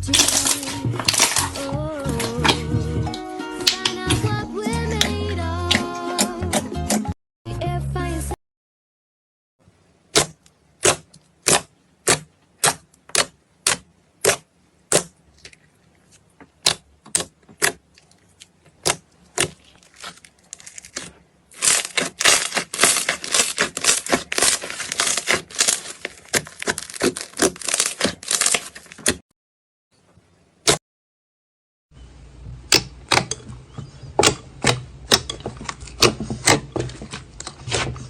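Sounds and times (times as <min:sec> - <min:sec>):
slime crackling pops: 0:00.1 - 0:01.6, 0:18.8 - 0:29.2.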